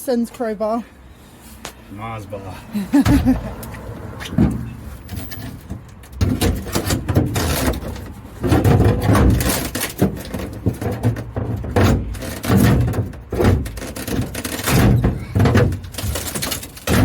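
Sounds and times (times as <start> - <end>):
wood knocks and thuds: 3.0 - 3.5, 4.2 - 4.7, 5.4 - 17.0
crowbar prying wood: 5.4 - 17.0.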